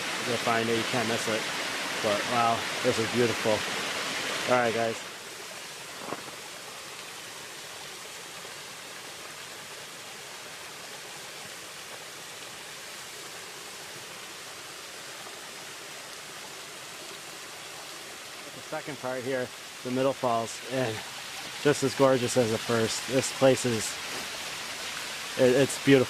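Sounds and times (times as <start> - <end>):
waterfall rushing: 0.0 - 7.4, 18.0 - 26.0.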